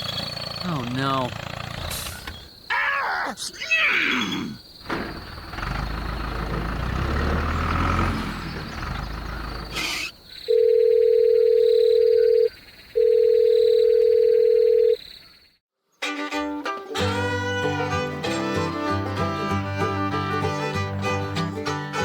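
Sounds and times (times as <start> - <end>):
plucked and bowed strings music: 16.0 - 22.0.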